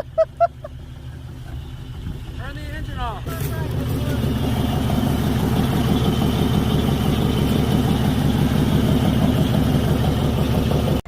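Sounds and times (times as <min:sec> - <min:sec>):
vehicle engine idling: 0:00.0 - 0:11.0.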